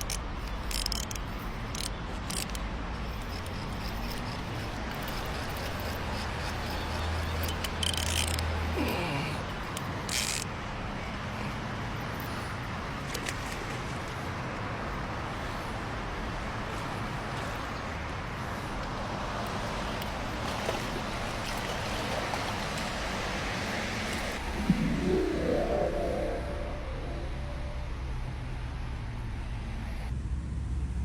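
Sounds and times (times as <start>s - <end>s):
sharp clicks: 0.0s - 8.6s
short falling tone: 24.4s - 28.7s
low hum: 24.4s - 31.0s.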